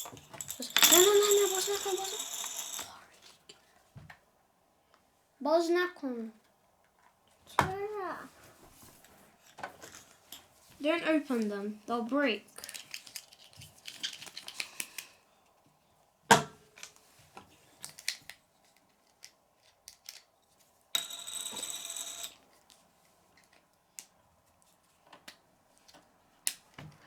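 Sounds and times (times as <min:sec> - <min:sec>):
plastic toy pieces clicking: 0:00.0 - 0:03.0.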